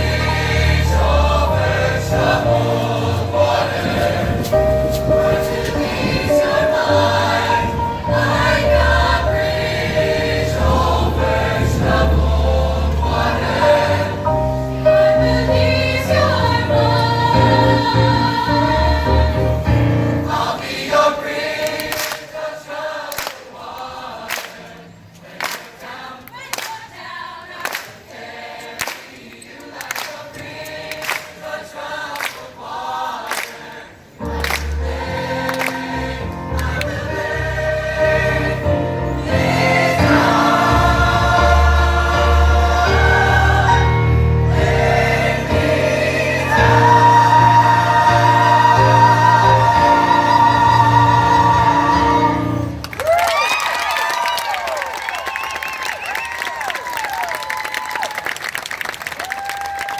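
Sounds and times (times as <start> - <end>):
bass accompaniment: 0.0 - 20.6, 34.2 - 53.0
choir singing: 0.0 - 52.8.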